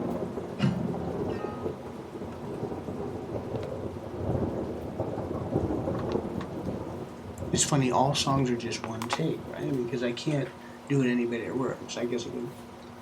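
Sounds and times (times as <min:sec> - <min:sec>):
rolling thunder: 0:00.0 - 0:10.1
steady rain: 0:00.0 - 0:13.0
acoustic guitar chord ringing: 0:00.6 - 0:01.9.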